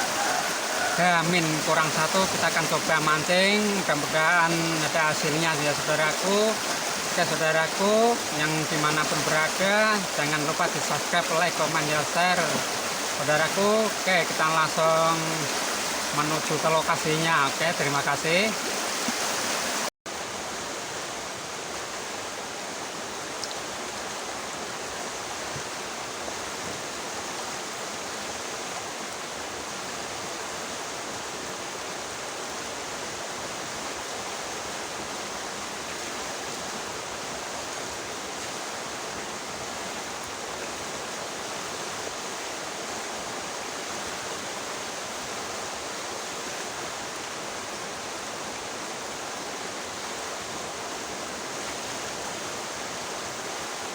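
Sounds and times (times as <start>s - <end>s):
river water rushing: 0.0s - 53.9s.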